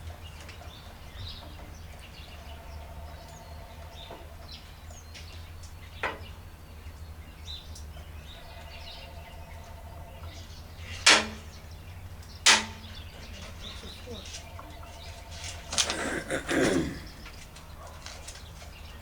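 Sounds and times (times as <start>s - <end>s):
birds chirping: 0.0s - 19.0s
sharp knocks: 11.0s - 11.5s, 12.4s - 12.9s.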